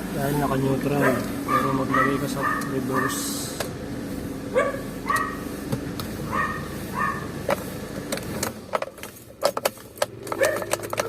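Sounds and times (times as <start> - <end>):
car engine idling: 0.0 - 11.0
dog yelps: 1.0 - 3.2, 4.5 - 5.4, 6.3 - 7.3, 10.4 - 10.7
sharp metallic clicks and rattles: 7.4 - 11.0.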